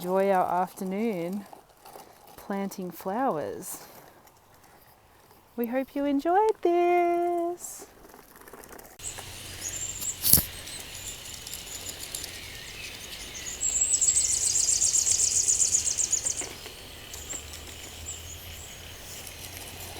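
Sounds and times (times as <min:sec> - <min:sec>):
birds calling: 0:09.0 - 0:19.9
steady high background hiss: 0:09.0 - 0:19.9
sharp click: 0:10.0 - 0:10.6.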